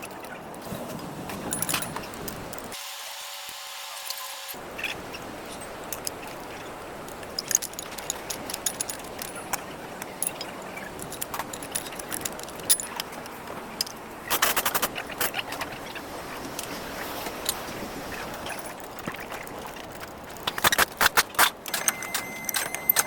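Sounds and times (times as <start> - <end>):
metal tools clinking: 0.0 - 2.8, 5.5 - 15.4, 18.5 - 23.0
quick clicks: 14.3 - 15.4.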